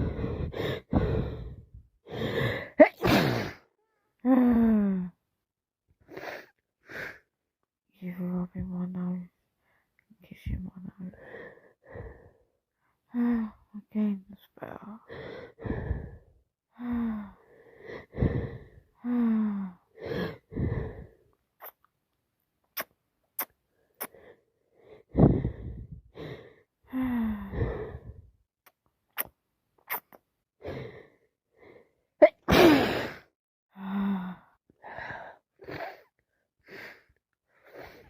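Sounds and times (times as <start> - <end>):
gasping in-breaths: 0.0 - 2.8, 15.0 - 21.2, 24.0 - 28.3
woman sneezing: 2.8 - 3.6, 32.2 - 33.2.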